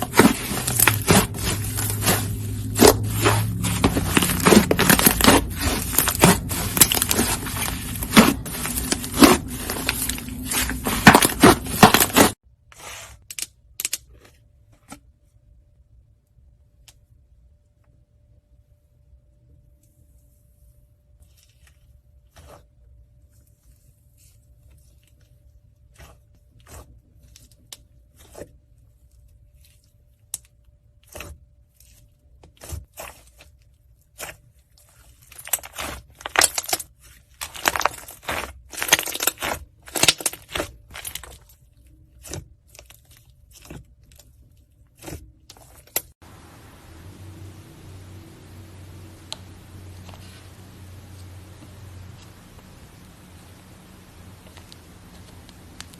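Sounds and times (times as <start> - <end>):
slime clicking and crackling: 0.0 - 12.4, 35.2 - 41.4.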